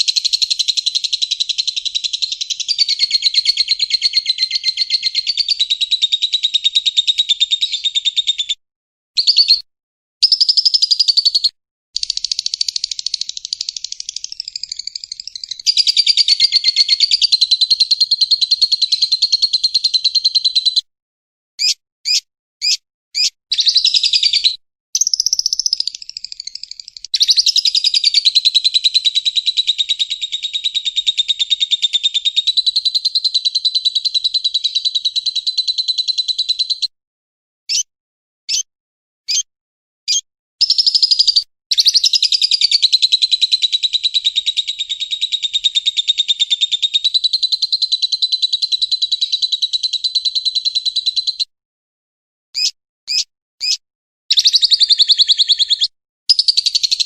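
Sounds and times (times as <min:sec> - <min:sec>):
lovebird high chirps: 0:00.0 - 0:08.6, 0:09.2 - 0:20.9, 0:21.6 - 0:36.9, 0:37.7 - 0:37.9, 0:38.5 - 0:38.7, 0:39.3 - 0:39.5, 0:40.1 - 0:51.5, 0:52.6 - 0:57.0
lovebird chattering: 0:10.2 - 0:20.8, 0:21.6 - 0:36.7, 0:52.6 - 0:57.0.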